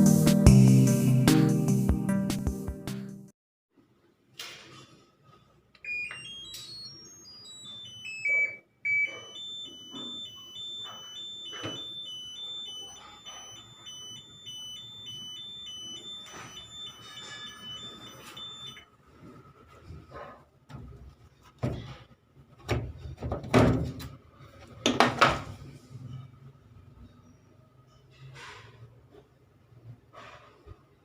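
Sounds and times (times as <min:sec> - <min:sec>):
washing machine electronic beeping: 0:05.8 - 0:19.0.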